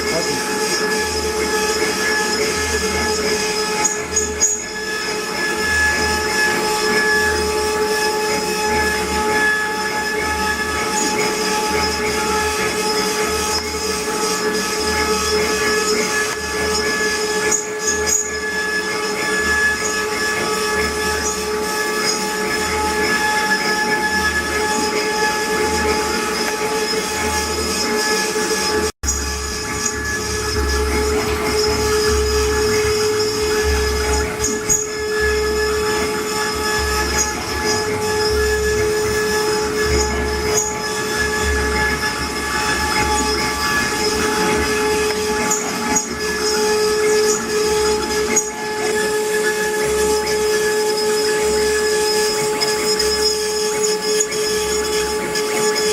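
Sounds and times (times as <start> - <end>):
router spindle whine: 0.0 - 55.9
wood cutting noise: 0.0 - 55.9
low hum: 29.0 - 45.2.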